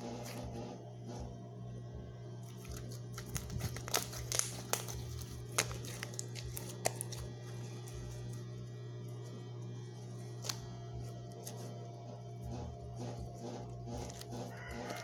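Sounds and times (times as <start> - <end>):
steady low hum: 0.0 - 15.0
slime squeezed by hand crackling: 2.6 - 7.4.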